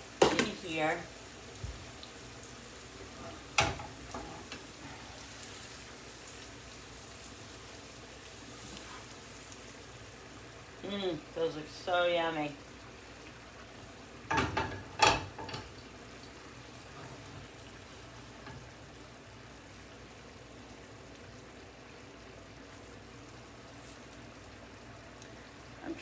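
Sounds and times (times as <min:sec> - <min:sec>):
food sizzling in a pan: 0:00.0 - 0:26.0
kitchenware clattering: 0:03.1 - 0:04.6, 0:14.3 - 0:15.8.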